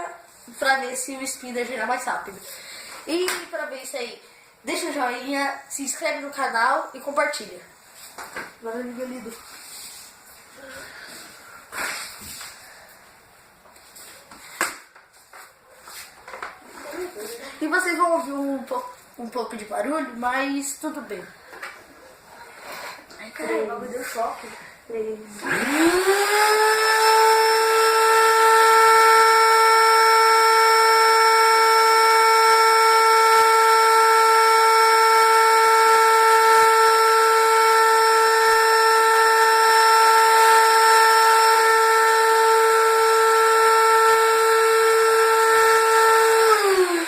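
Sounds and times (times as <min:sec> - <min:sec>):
vacuum cleaner motor whine: 0:25.4 - 0:47.0.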